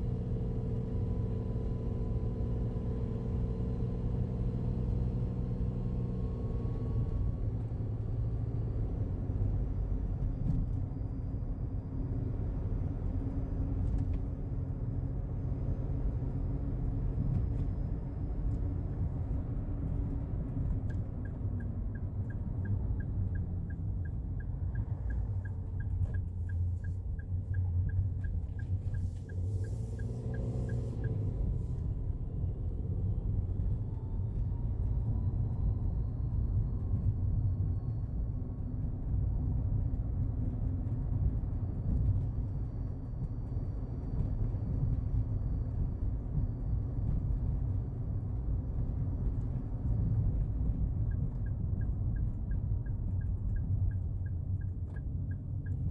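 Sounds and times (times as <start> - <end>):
van engine low rumble: 0.0 - 55.9.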